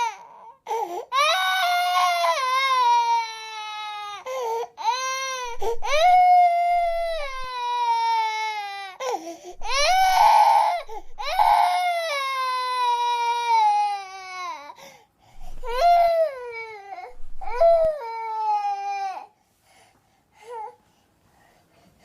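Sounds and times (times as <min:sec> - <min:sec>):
high-pitched wailing cry: 0:05.4 - 0:07.6, 0:09.6 - 0:12.2, 0:15.6 - 0:16.3, 0:17.4 - 0:18.0.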